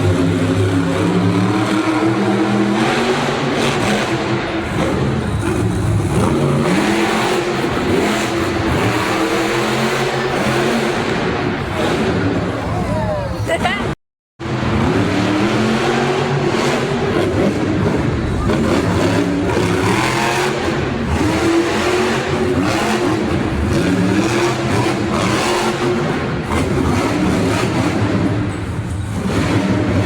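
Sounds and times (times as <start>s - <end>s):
monster truck engines revving: 0.0s - 30.0s.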